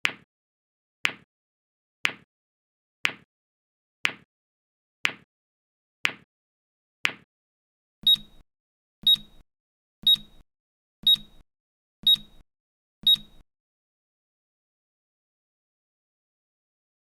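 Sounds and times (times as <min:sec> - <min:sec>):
timer alarm beeps: 0:08.0 - 0:08.4, 0:09.0 - 0:09.4, 0:10.0 - 0:10.4, 0:11.0 - 0:11.4, 0:12.0 - 0:12.4, 0:13.0 - 0:13.4.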